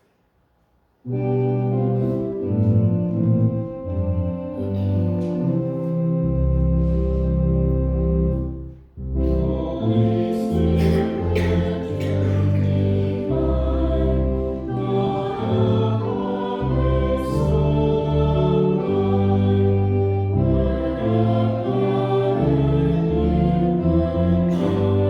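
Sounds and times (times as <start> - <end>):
instrumental accompaniment: 1.1 - 25.0
choir singing a hymn: 9.2 - 25.0.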